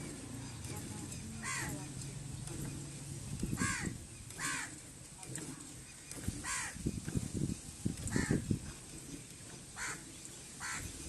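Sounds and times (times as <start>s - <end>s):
crow cawing: 1.4s - 1.7s, 3.6s - 4.8s, 6.4s - 6.8s, 8.1s - 8.4s, 9.8s - 10.8s.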